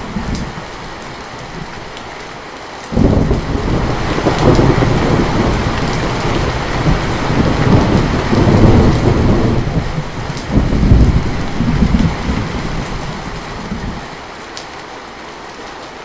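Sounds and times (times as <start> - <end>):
heavy rain falling: 0.0 - 16.0
rolling thunder: 3.0 - 14.0.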